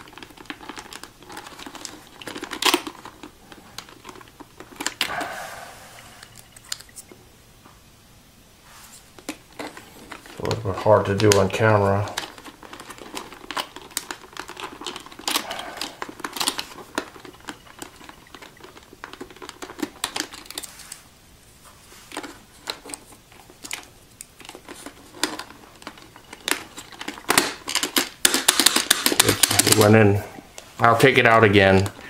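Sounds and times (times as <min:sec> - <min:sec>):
plastic keyboard clicks and rattles: 0:00.0 - 0:05.3, 0:09.2 - 0:20.7, 0:22.1 - 0:30.0.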